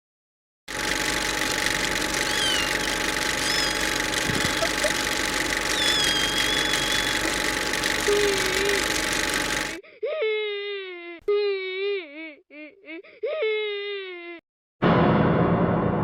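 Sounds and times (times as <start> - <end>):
steady machinery noise: 0.7 - 9.8
short high squeaks: 2.2 - 4.8, 5.6 - 7.4.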